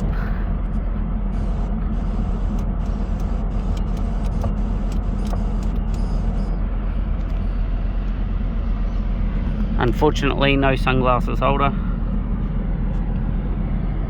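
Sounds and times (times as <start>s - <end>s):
car engine idling: 0.0s - 10.1s.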